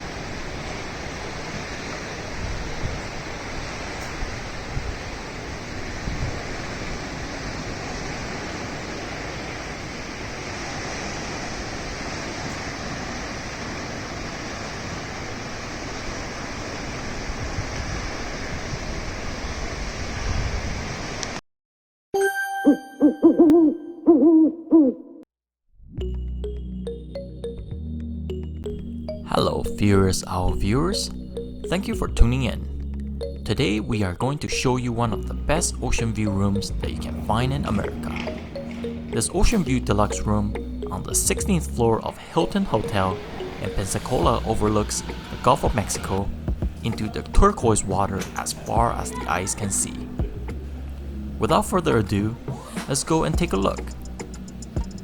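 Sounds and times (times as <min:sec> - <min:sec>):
ocean surf breaking: 0:00.0 - 0:21.4, 0:29.1 - 0:55.0
owl hooting: 0:23.2 - 0:25.2, 0:42.2 - 0:46.2.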